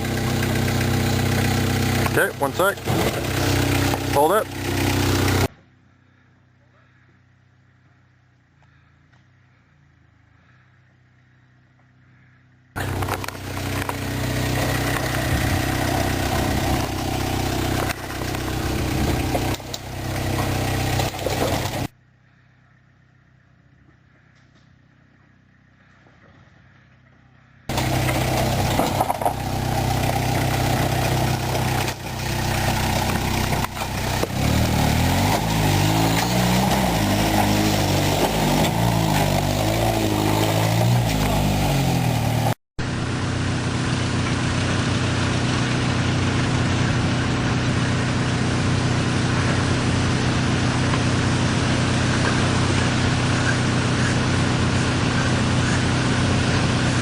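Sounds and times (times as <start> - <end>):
engine running hard: 0.0 - 5.5, 12.8 - 21.9, 27.7 - 57.0.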